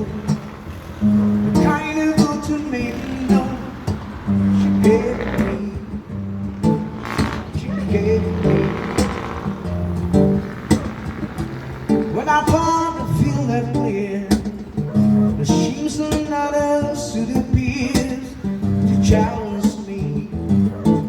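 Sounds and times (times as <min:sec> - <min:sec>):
acoustic guitar: 0:00.0 - 0:21.0
person singing: 0:07.4 - 0:08.8, 0:12.1 - 0:14.7, 0:15.3 - 0:20.4.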